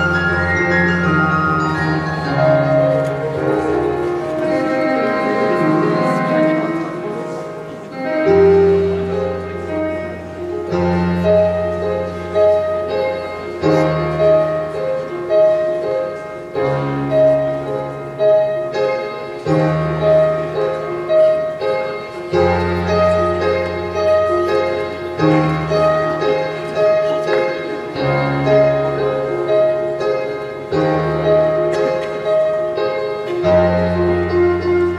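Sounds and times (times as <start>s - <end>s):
slow solo piano piece: 0.0s - 34.9s.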